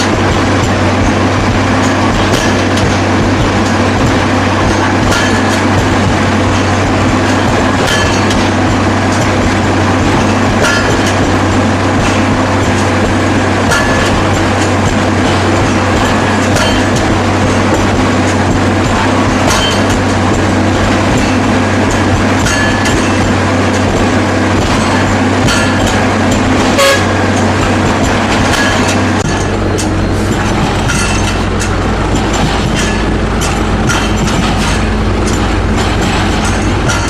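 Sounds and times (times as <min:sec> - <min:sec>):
hammers impacting concrete: 0:00.0 - 0:23.4
concrete breaker machine drone: 0:00.0 - 0:37.0.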